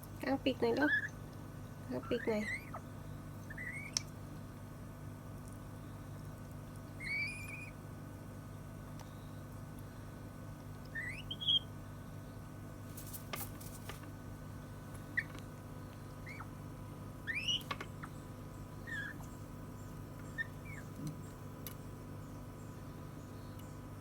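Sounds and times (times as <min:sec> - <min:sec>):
parrot squeaky whistles: 0:07.0 - 0:07.7, 0:11.0 - 0:11.6, 0:17.3 - 0:17.6.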